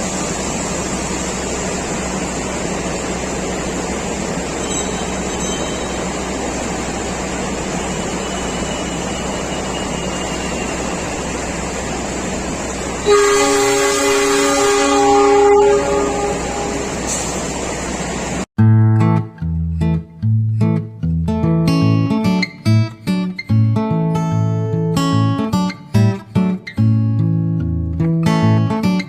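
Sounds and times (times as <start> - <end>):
heavy rain hissing: 0.0 - 18.5
train air horn blast: 13.0 - 17.5.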